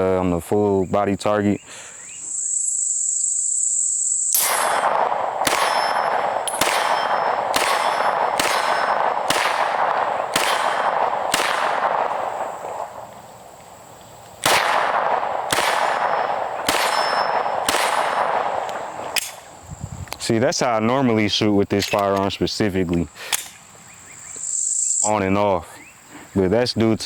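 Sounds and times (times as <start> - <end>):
pistol shots ringing: 4.3 - 13.6, 14.4 - 19.6.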